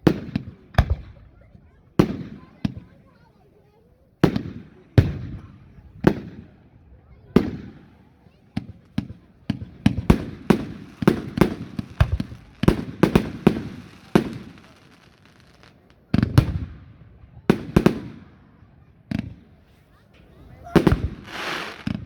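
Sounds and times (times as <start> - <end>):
fireworks bangs: 7.4 - 16.9, 19.1 - 22.0.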